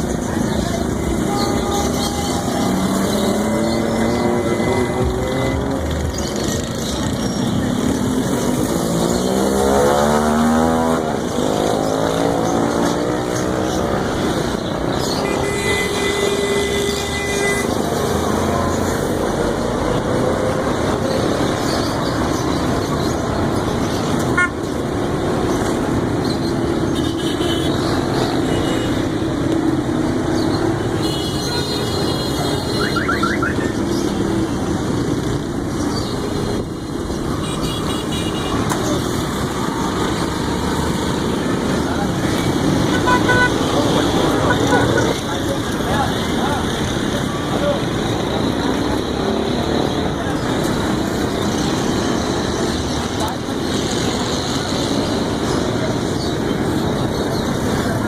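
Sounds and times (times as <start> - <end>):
cars and motorcycles passing: 0.0 - 58.0
car horn: 1.2 - 3.0, 15.2 - 17.8, 24.3 - 24.7, 31.0 - 33.8, 42.9 - 43.8.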